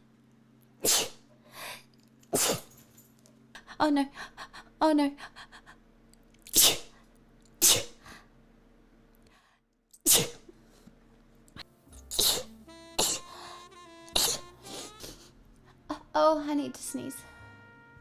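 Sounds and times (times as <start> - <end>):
person sneezing: 0.8 - 1.2, 2.3 - 2.7, 6.5 - 7.0, 7.6 - 8.0, 10.0 - 10.5, 12.0 - 13.5, 14.2 - 15.3.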